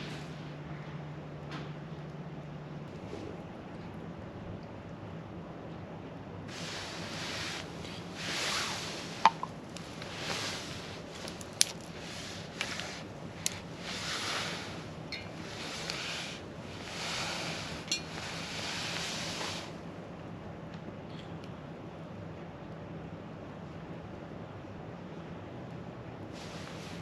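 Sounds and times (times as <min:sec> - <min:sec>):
wood fire hissing: 0:00.0 - 0:00.6, 0:06.4 - 0:20.0, 0:26.2 - 0:27.0
fire popping and snapping: 0:06.8 - 0:17.0.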